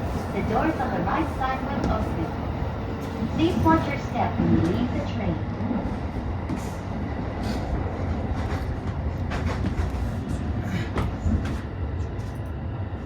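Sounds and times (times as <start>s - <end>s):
train wheels rumbling on rail: 0.0s - 13.0s.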